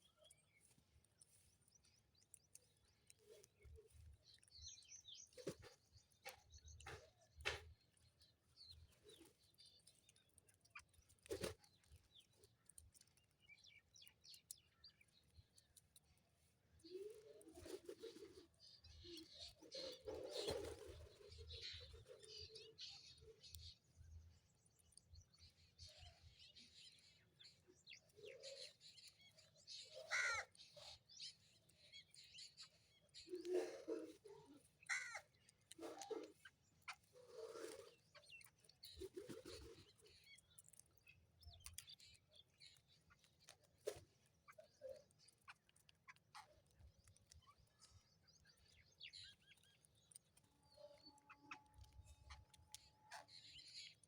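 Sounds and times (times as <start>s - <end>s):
sparrows chirping: 0.0s - 54.0s
crow cawing: 30.1s - 30.4s, 34.9s - 35.2s.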